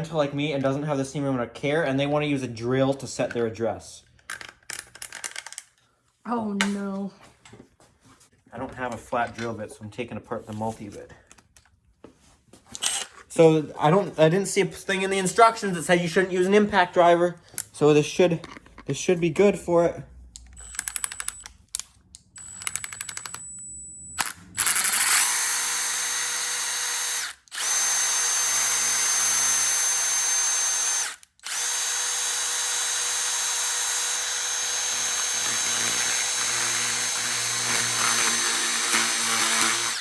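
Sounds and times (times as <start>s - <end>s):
impact driver whining: 24.2s - 40.0s.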